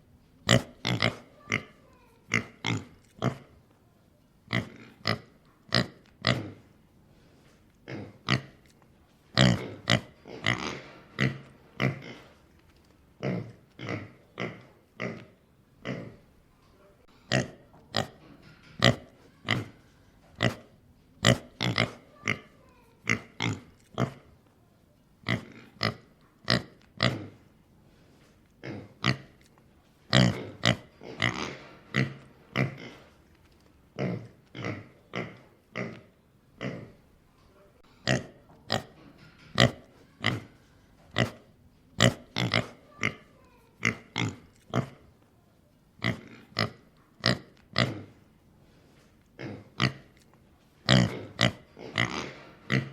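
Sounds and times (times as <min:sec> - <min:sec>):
pig grunting: 0:00.4 - 0:03.5, 0:04.5 - 0:06.7, 0:07.8 - 0:08.6, 0:09.4 - 0:12.4, 0:13.2 - 0:16.2, 0:17.3 - 0:19.8, 0:20.4 - 0:24.3, 0:28.6 - 0:29.4, 0:30.1 - 0:33.2, 0:34.0 - 0:37.0, 0:38.0 - 0:45.0, 0:46.0 - 0:48.2, 0:49.4 - 0:50.2, 0:50.8 - 0:52.9.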